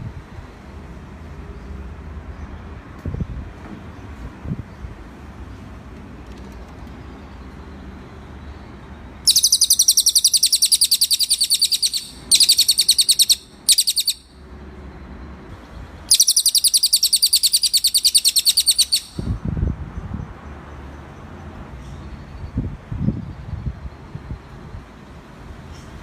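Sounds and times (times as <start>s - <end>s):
bird high-pitched trills: 9.3s - 14.4s, 16.1s - 19.3s.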